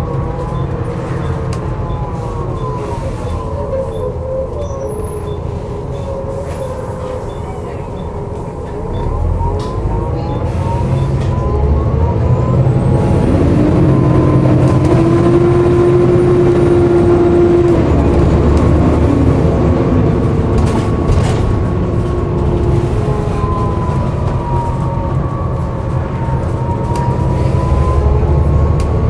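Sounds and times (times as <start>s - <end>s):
bus engine running: 0.0s - 29.0s
rising engine tone: 8.8s - 29.0s.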